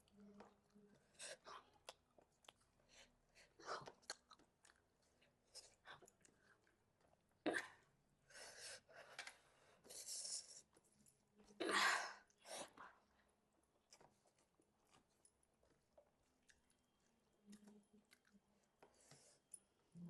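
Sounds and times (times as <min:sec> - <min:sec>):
person chewing food: 0:01.7 - 0:02.8, 0:03.8 - 0:07.2, 0:13.6 - 0:19.6.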